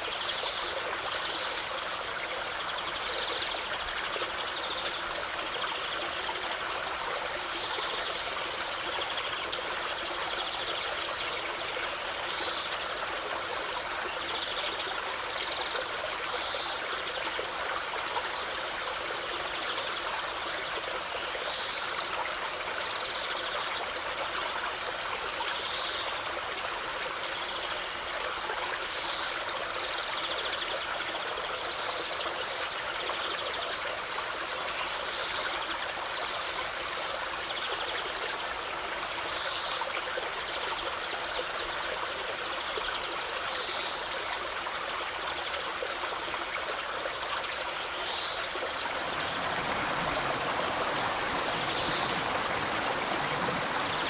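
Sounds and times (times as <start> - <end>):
river water rushing: 48.2 - 54.0.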